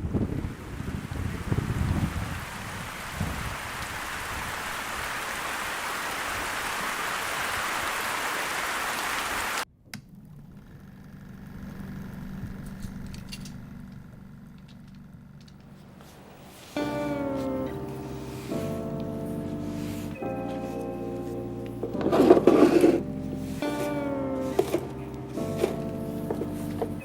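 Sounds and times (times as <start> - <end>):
heavy rain hissing: 0.0 - 9.6, 16.2 - 25.7.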